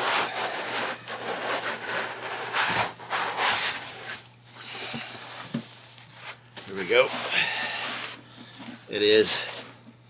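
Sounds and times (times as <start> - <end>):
cardboard scraping and rustling: 0.0 - 4.2.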